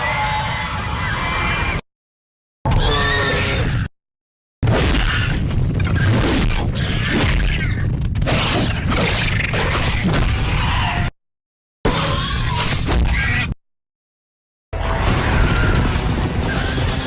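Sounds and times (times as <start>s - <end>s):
screeching creature calls: 2.7s - 3.9s.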